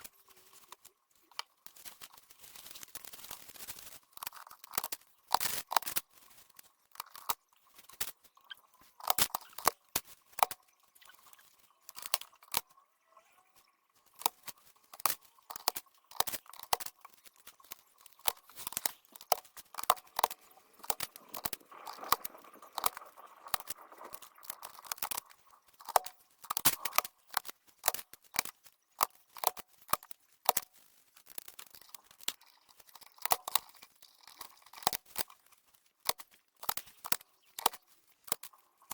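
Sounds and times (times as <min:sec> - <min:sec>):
plastic keyboard clicks: 0:07.0 - 0:08.1, 0:08.9 - 0:12.6, 0:14.2 - 0:35.4, 0:36.0 - 0:38.9.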